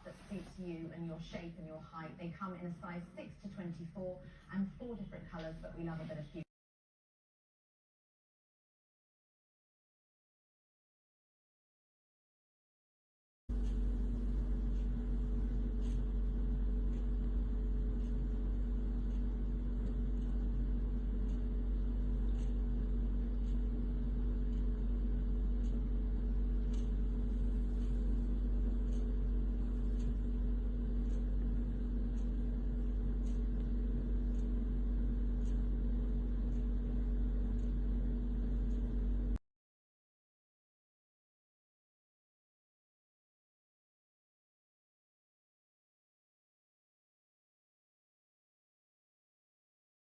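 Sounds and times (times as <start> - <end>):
machine hum with low drone: 0.0 - 6.5, 13.5 - 39.4
faint irregular ticks: 13.5 - 39.4.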